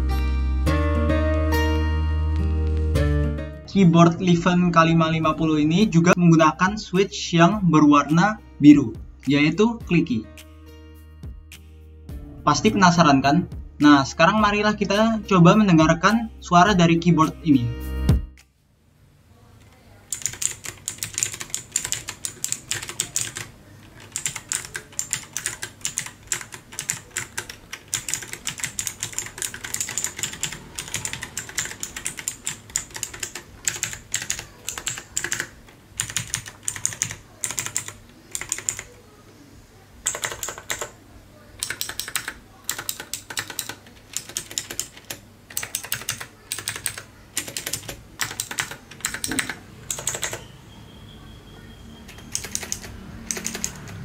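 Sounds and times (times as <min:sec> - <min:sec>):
mechanical keyboard typing: 0:20.1 - 0:39.0, 0:40.0 - 0:41.0, 0:41.6 - 0:50.5, 0:52.1 - 0:54.0.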